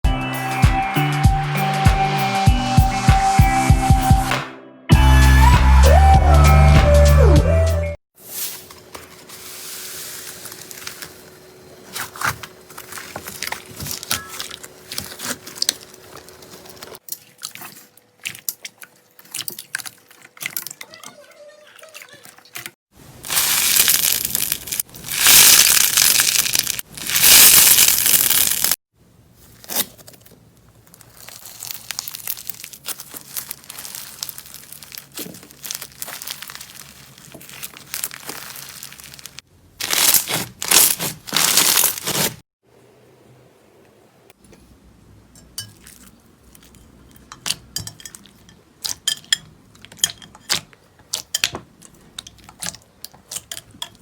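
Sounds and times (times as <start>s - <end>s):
slime crunching and crackling: 11.8s - 20.9s, 21.8s - 28.8s, 29.4s - 42.4s.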